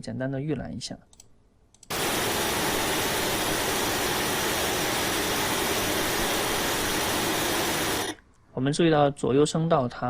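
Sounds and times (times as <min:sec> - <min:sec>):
loud steady hiss: 0:01.9 - 0:08.2.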